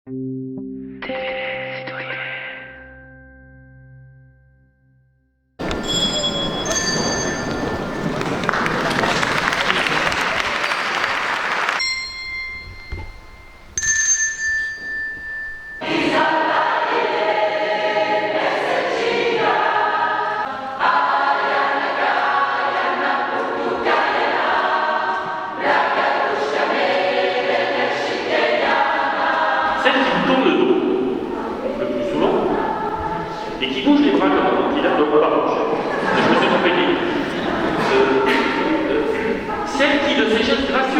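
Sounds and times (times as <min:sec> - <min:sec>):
steady ringing notes: 0:05.6 - 0:09.3, 0:11.7 - 0:16.7, 0:29.7 - 0:35.0
choir singing: 0:05.6 - 0:11.8, 0:15.8 - 0:40.9
applause: 0:06.6 - 0:12.2.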